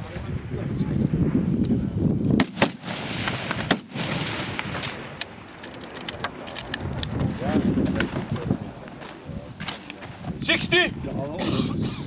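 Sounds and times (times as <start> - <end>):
rifle shots: 2.4 - 5.4.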